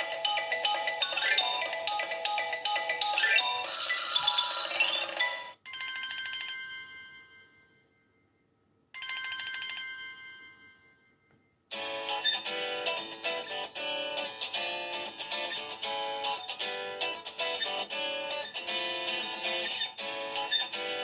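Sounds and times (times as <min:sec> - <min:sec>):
ringtone melody: 0:00.0 - 0:07.5.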